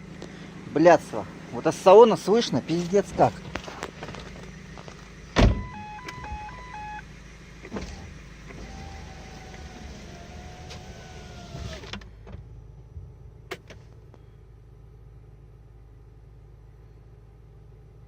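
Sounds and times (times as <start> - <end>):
car engine running inside cabin: 0.0 - 18.0
power window motor whining: 5.3 - 12.1
thump: 5.4 - 5.7
two-tone electronic chime: 5.6 - 7.0.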